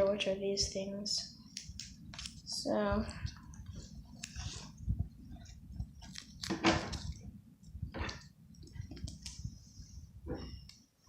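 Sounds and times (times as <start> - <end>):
sticky tape crinkling: 5.4 - 7.3.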